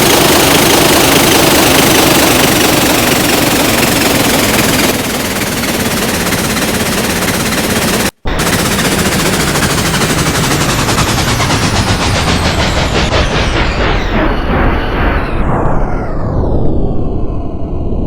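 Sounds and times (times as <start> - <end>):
train rattling clatter: 0.0 - 14.3.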